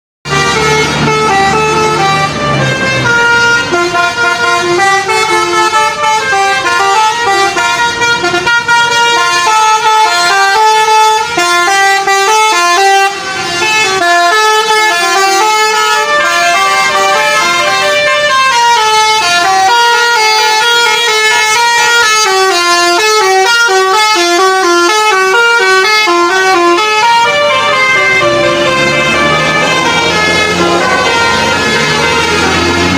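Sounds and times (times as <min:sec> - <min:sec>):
bus horn playing melody: 0:00.2 - 0:32.9.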